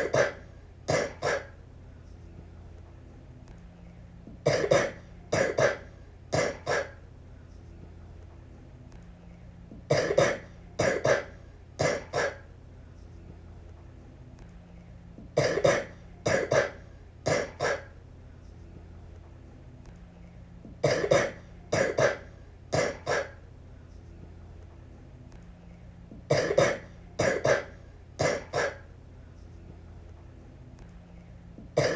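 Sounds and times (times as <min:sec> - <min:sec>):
girl coughing: 0:00.0 - 0:01.6, 0:04.4 - 0:07.0, 0:09.9 - 0:12.4, 0:15.4 - 0:17.9, 0:20.8 - 0:23.4, 0:26.3 - 0:28.8.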